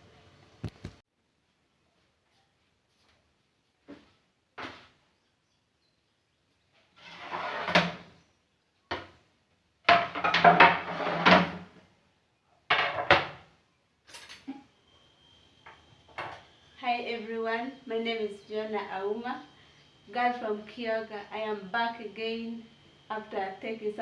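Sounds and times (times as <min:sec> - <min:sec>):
objects knocking and clattering: 0:09.9 - 0:11.7, 0:12.7 - 0:13.4.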